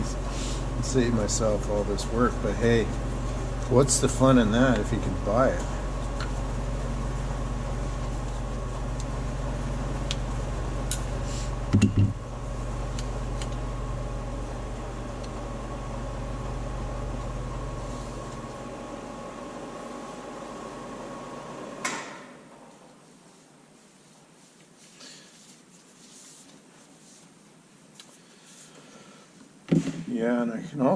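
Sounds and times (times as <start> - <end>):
metal lathe humming: 0.0 - 21.8.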